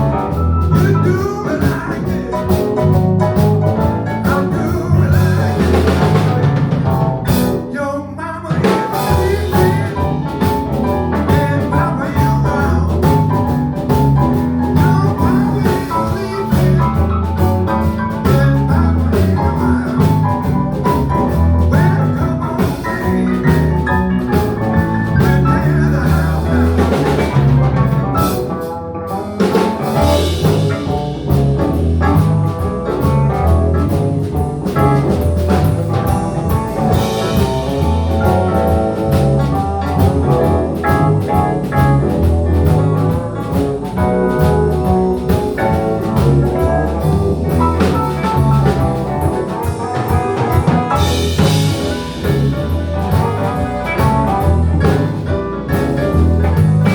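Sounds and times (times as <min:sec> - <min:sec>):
drum kit beat: 0:00.0 - 0:07.7, 0:08.5 - 0:56.9
bass: 0:00.0 - 0:56.9
guitar: 0:00.0 - 0:56.9.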